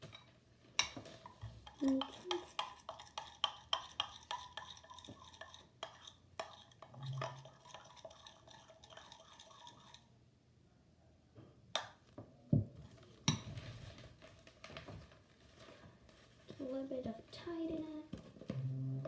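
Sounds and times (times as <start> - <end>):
utensil stirring slime in bowl: 0.8 - 10.1.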